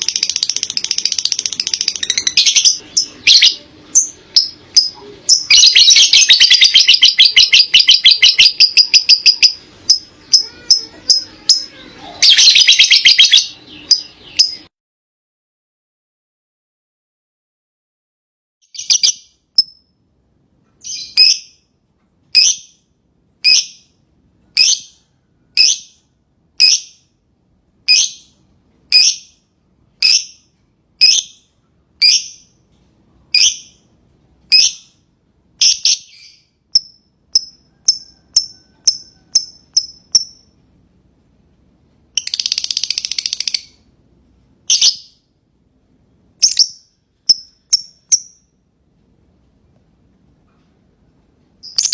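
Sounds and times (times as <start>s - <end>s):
bird rapid chattering: 0.0s - 11.6s, 42.2s - 43.8s
bird shrill chirps: 0.1s - 14.7s.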